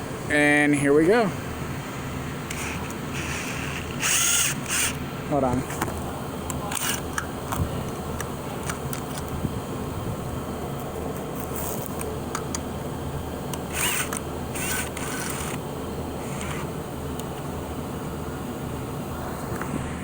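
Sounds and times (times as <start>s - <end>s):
steady low hum: 0.0s - 20.0s
handling clicks and rustling: 5.4s - 9.4s.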